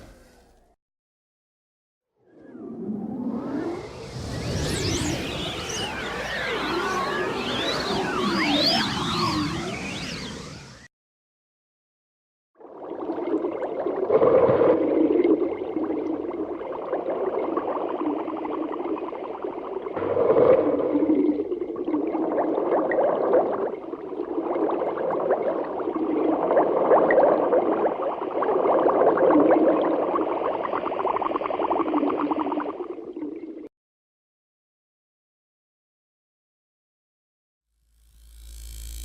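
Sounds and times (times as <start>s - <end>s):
wavering magic drone: 2.3s - 10.9s.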